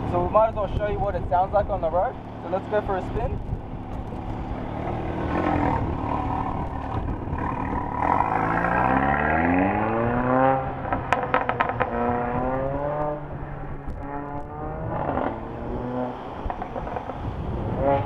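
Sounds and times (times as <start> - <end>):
exhaust pops and crackles: 0.0 - 8.4, 10.8 - 13.2, 13.8 - 15.6, 16.4 - 18.0
car engine accelerating hard: 2.5 - 18.0.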